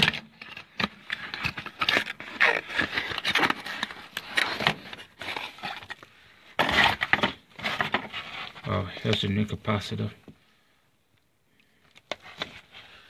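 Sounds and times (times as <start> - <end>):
packaging rustling and scraping: 0.0 - 9.3, 11.9 - 13.0.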